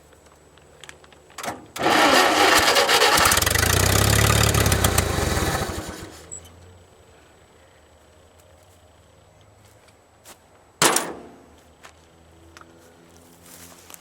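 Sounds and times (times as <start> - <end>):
engine cranking without starting: 1.4 - 6.6.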